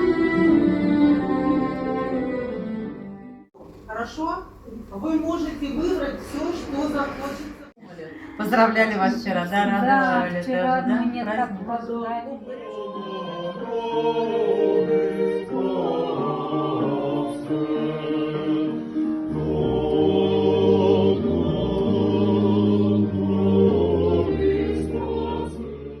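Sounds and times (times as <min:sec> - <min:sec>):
choir holding long notes: 0:00.0 - 0:03.5, 0:12.4 - 0:26.0.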